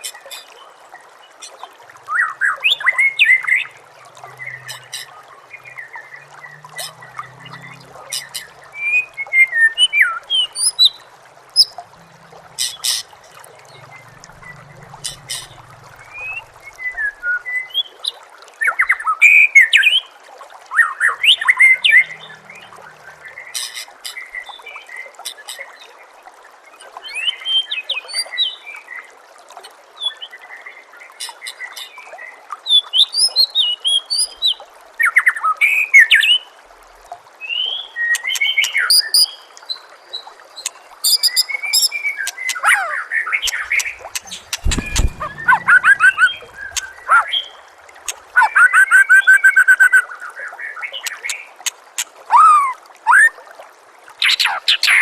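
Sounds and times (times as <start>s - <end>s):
trickle of running water: 0.0s - 55.0s
bird singing whistles and clicks: 43.4s - 47.0s.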